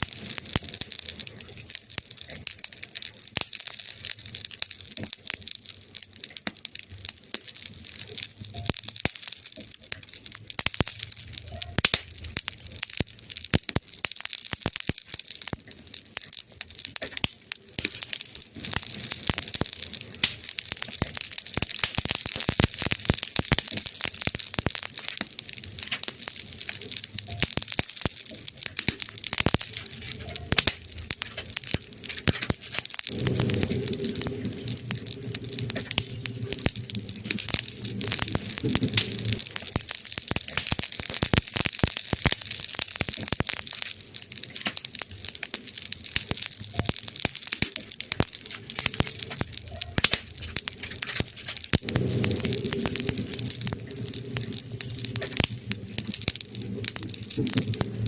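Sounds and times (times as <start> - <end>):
campfire crackling: 0.0 - 58.0
steady hiss: 18.6 - 43.1, 46.0 - 58.0.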